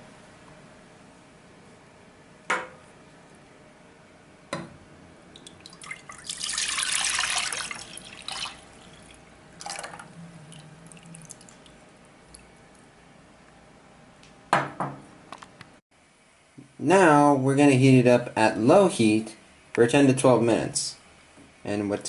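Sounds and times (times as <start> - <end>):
liquid pouring and splashing: 5.4 - 12.5.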